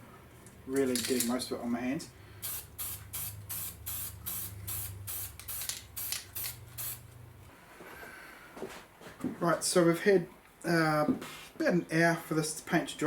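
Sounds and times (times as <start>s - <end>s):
spray can hissing in bursts: 2.4s - 7.0s.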